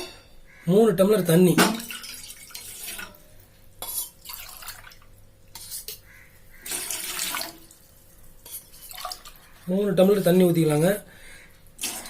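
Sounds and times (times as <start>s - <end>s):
water pouring into a pot: 1.7s - 3.4s, 4.2s - 5.2s, 6.6s - 9.6s, 11.8s - 12.0s.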